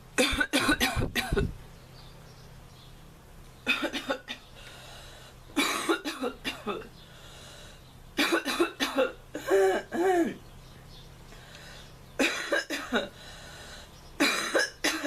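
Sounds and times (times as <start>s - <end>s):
girl coughing: 0.2s - 1.5s, 3.7s - 4.4s, 5.6s - 6.9s, 8.2s - 10.4s, 12.2s - 13.1s, 14.2s - 15.0s.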